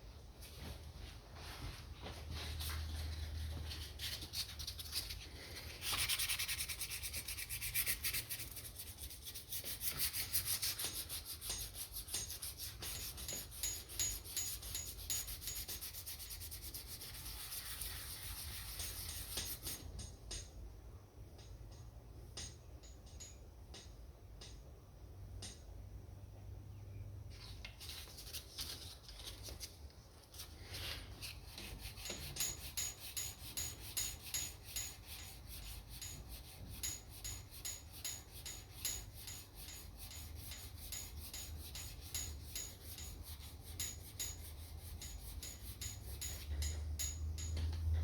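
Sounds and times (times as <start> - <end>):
sandpaper rubbing: 3.4 - 19.8.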